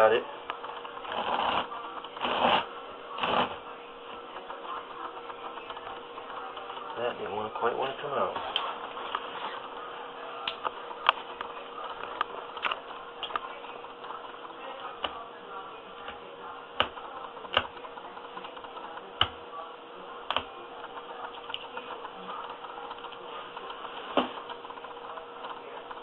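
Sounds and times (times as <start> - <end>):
blade cutting through carpet: 1.1 - 3.6.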